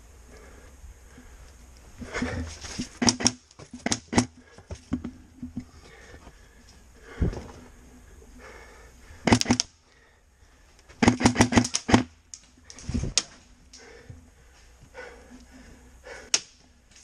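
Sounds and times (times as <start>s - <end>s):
airsoft gun firing: 3.0s - 4.3s, 9.2s - 9.7s, 11.0s - 12.1s.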